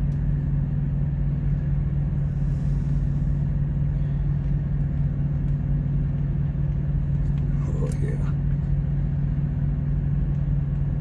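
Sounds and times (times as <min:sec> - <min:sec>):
truck engine idling: 0:00.0 - 0:11.0.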